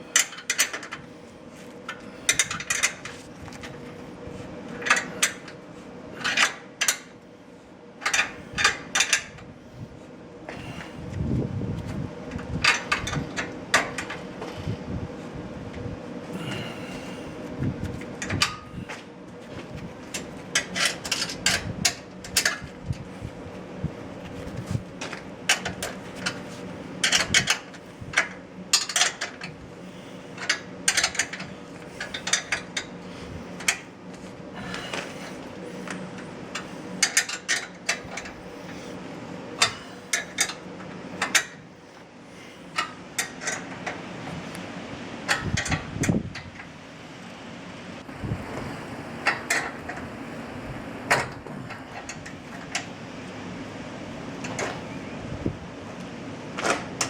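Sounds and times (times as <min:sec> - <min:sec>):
steady low hum: 0:00.0 - 0:57.0
metallic clicks and clanks: 0:27.0 - 0:29.6, 0:30.4 - 0:32.9.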